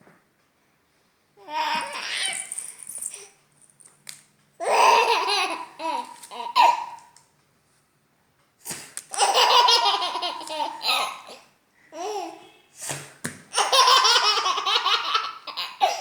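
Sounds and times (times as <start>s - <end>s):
baby girl laughing: 1.4s - 3.3s, 4.6s - 7.2s, 9.1s - 12.5s, 13.5s - 16.0s.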